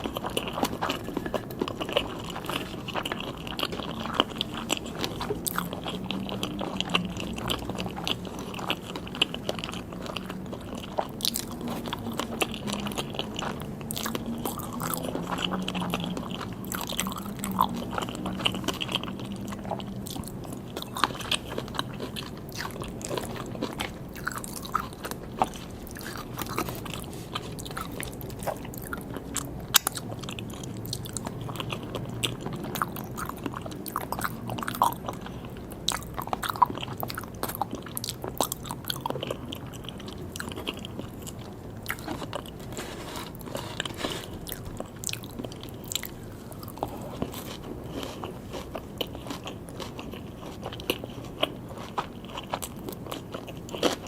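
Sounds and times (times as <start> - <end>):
chewing and crunching: 0.0 - 54.0.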